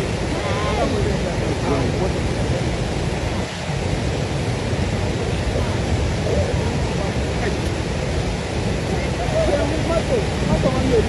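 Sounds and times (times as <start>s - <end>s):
faint voices: 0.0s - 3.6s.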